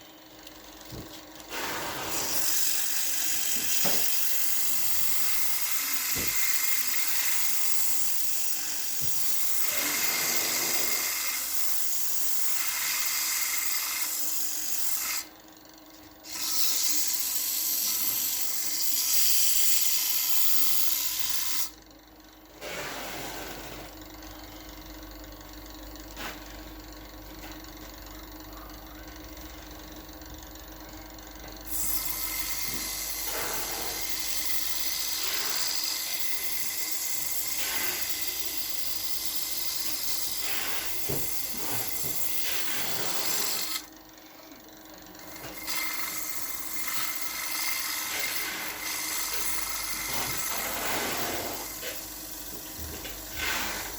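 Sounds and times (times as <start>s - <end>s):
tool rubbing on spinning wood: 39.5s - 43.9s.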